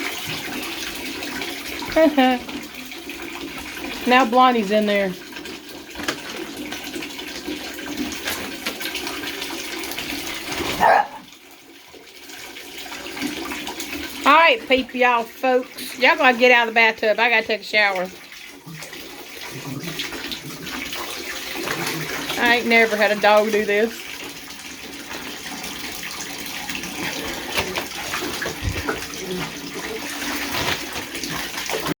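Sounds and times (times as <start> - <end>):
water splashing in bathtub: 0.0 - 32.0
splashes and knocks: 24.9 - 32.0.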